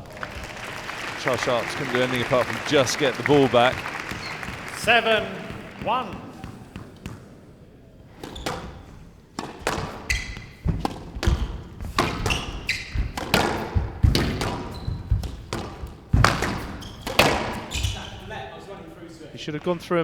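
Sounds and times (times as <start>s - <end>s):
rackets striking squash ball: 8.1s - 18.3s
ball smacking off walls: 10.7s - 17.7s.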